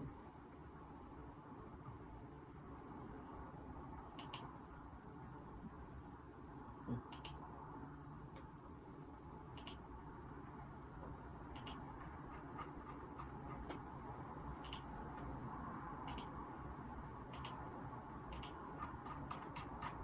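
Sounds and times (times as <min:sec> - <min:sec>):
low room noise: 0:00.0 - 0:20.0
computer mouse clicks: 0:04.1 - 0:04.5, 0:07.1 - 0:07.4, 0:09.6 - 0:09.8, 0:11.5 - 0:15.3, 0:16.0 - 0:16.4, 0:17.3 - 0:17.6, 0:18.3 - 0:20.0.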